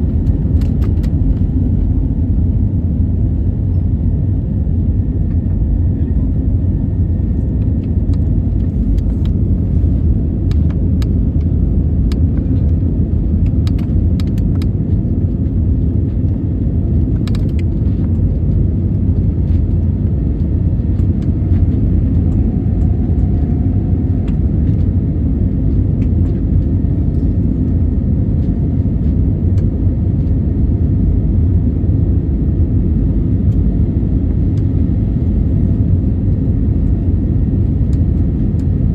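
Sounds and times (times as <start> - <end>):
jet engines rumbling: 0.0 - 38.9
light clicks and rattles: 17.1 - 18.2.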